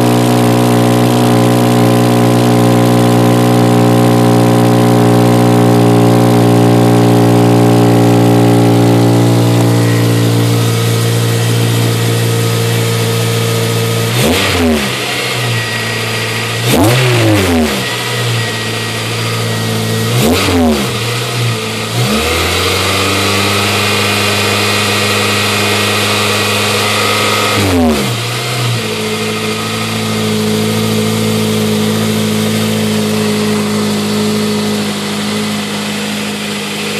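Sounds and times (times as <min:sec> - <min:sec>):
car engine idling and revving: 0:00.0 - 0:36.9.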